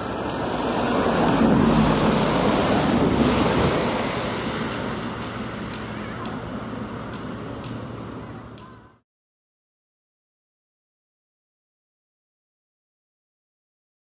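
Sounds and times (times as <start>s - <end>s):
aircraft engine roar: 0.0s - 9.0s.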